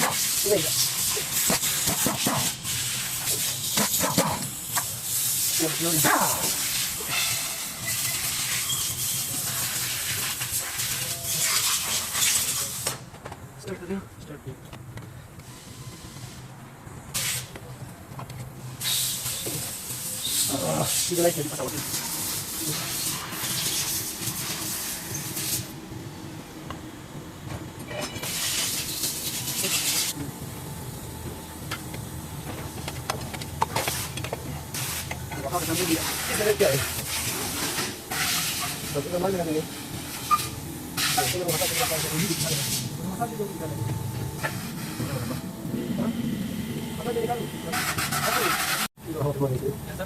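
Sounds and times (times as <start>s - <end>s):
air or gas hissing: 0.0s - 13.1s, 15.4s - 17.6s, 18.6s - 25.8s, 28.2s - 30.2s, 33.6s - 43.7s, 44.4s - 46.8s
short hiss: 17.1s - 17.5s.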